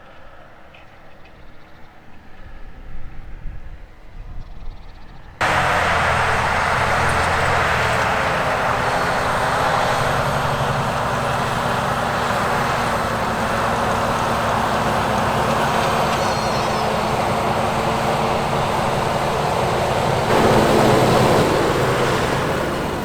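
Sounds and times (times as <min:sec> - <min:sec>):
loud rushing noise: 0:05.4 - 0:23.0
tractor diesel engine under load: 0:05.4 - 0:23.0.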